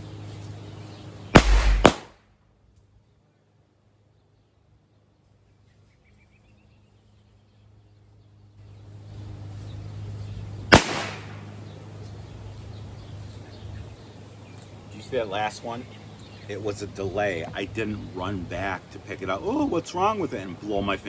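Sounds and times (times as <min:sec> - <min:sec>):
low steady hum: 0:01.4 - 0:02.1
firecracker bang: 0:01.4 - 0:02.2, 0:10.8 - 0:11.4.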